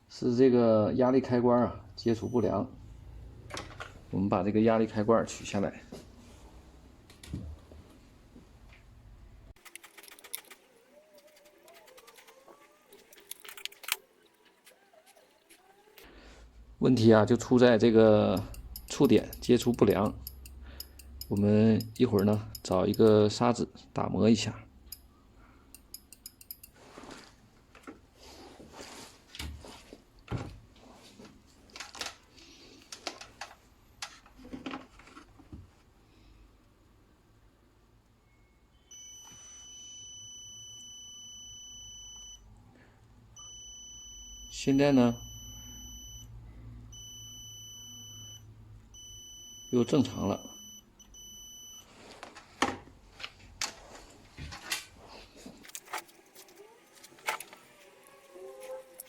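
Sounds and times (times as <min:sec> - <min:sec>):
small parts clicking and clattering: 0:09.6 - 0:14.0
clicks and taps of small tools: 0:18.4 - 0:23.2, 0:25.7 - 0:26.8.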